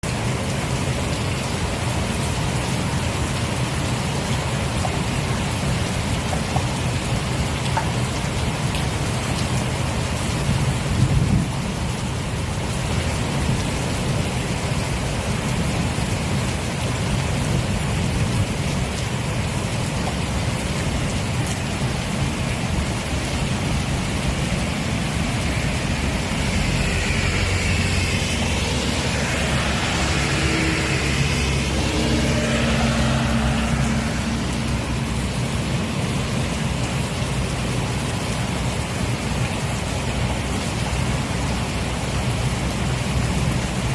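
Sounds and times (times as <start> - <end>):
heavy rain pouring: 0.0 - 43.9
low rumble: 20.9 - 38.4
whine rising and falling in pitch: 24.1 - 36.8.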